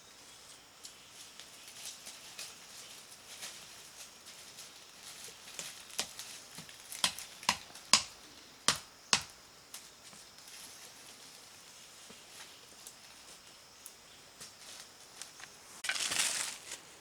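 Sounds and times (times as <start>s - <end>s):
sharp knocks: 8.7s - 9.3s.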